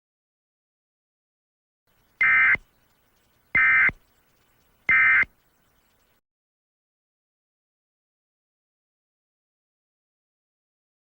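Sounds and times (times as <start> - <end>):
digital data tone bursts: 2.1 - 6.2.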